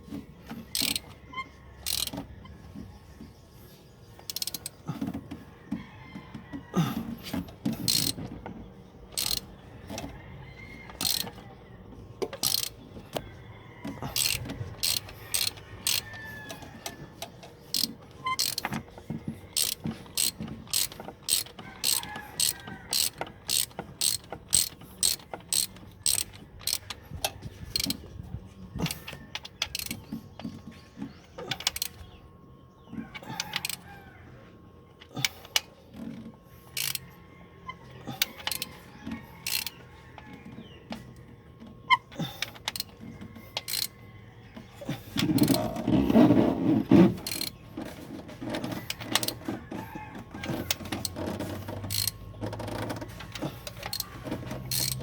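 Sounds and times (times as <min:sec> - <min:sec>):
ratchet wrench clicking: 0:00.7 - 0:01.2, 0:01.8 - 0:02.3, 0:04.3 - 0:04.7, 0:07.8 - 0:08.2, 0:09.2 - 0:09.5, 0:10.9 - 0:11.4, 0:12.2 - 0:12.8, 0:14.1 - 0:18.8, 0:19.5 - 0:27.0, 0:27.7 - 0:28.0, 0:29.4 - 0:30.1, 0:31.6 - 0:32.0, 0:33.4 - 0:33.8, 0:36.8 - 0:37.0, 0:38.2 - 0:38.8, 0:39.4 - 0:39.8, 0:42.4 - 0:42.9, 0:43.6 - 0:44.0, 0:45.3 - 0:45.6, 0:47.2 - 0:47.6, 0:50.4 - 0:55.0.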